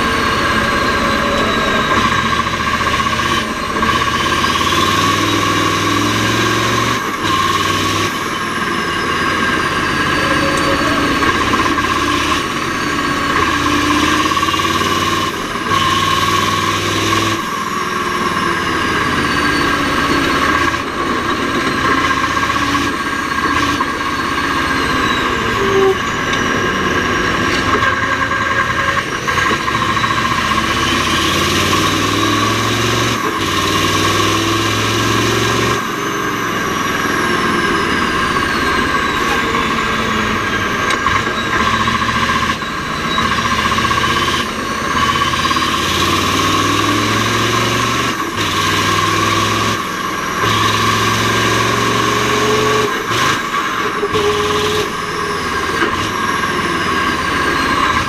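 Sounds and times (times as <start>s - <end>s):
steady high whine: 0.0s - 15.7s
diesel truck engine under load: 0.0s - 58.0s.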